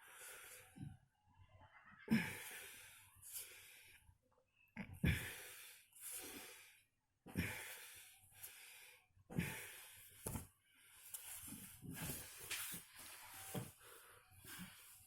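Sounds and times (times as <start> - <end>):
person breathing heavily: 5.0 - 11.1.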